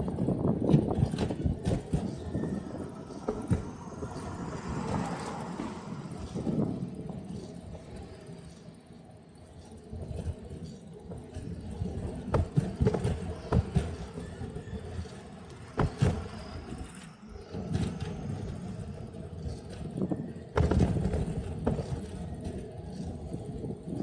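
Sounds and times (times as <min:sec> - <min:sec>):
bike clicks and knocks on bumps: 0:00.0 - 0:05.4, 0:09.4 - 0:15.2, 0:15.8 - 0:18.2, 0:19.4 - 0:24.0
wind on microphone: 0:00.0 - 0:08.2, 0:11.4 - 0:24.0.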